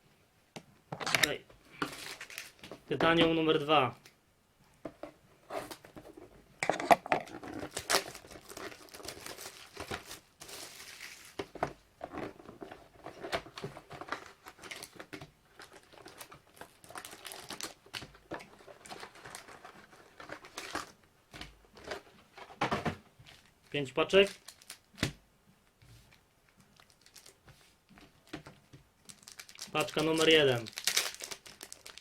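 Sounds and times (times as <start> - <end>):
plastic wrap crinkling and tearing: 1.8 - 2.7, 7.2 - 11.6, 12.2 - 21.0, 24.2 - 25.0, 26.4 - 27.4, 29.0 - 32.0.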